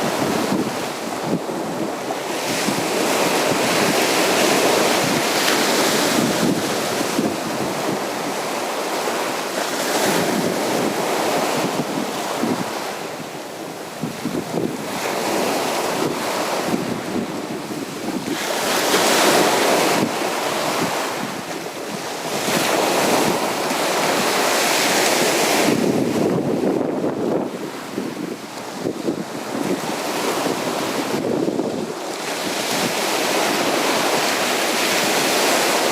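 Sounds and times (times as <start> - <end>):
sea surf washing onto beach: 0.0 - 35.9.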